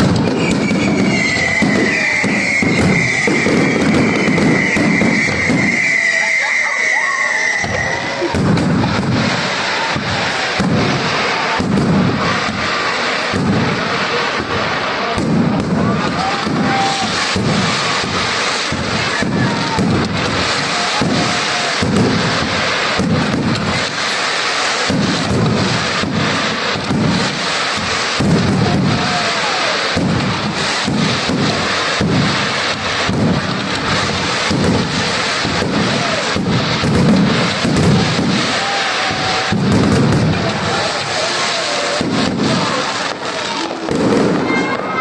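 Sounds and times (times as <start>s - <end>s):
firework high whistle: 0.0s - 45.0s
fireworks crackling and banging: 0.0s - 45.0s.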